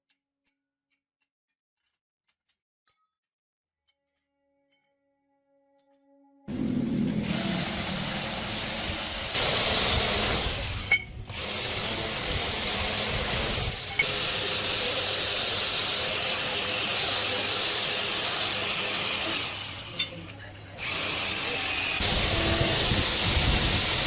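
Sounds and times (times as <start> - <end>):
loud hissing noise: 6.5 - 19.9, 20.9 - 24.0.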